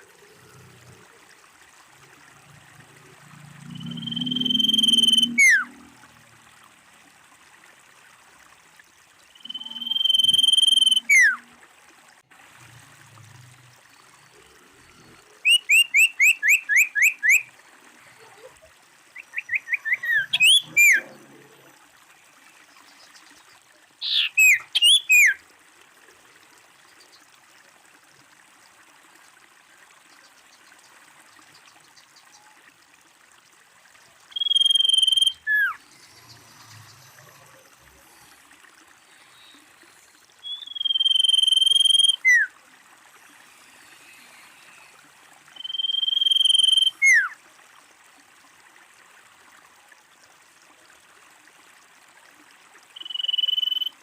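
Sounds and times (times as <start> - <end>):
bird whistling: 3.8 - 5.7, 9.4 - 11.4, 15.4 - 17.4, 19.2 - 21.0, 24.0 - 25.4, 34.3 - 35.8, 40.4 - 42.5, 45.6 - 47.3, 53.0 - 53.9.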